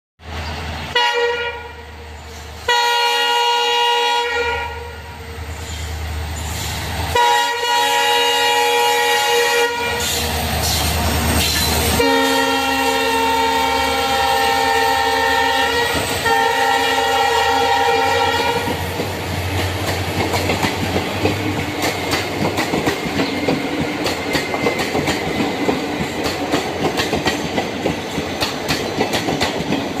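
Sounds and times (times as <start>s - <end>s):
train rattling past: 0.2s - 30.0s
train horn blasts: 0.9s - 2.0s, 2.7s - 5.4s, 7.1s - 10.3s, 11.9s - 18.8s
wheels clacking over rail joints: 18.6s - 30.0s.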